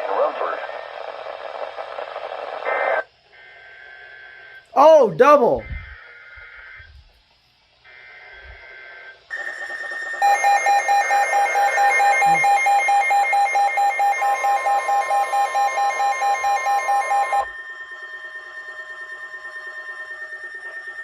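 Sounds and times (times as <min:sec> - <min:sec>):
steady high beep: 0:10.2 - 0:21.0.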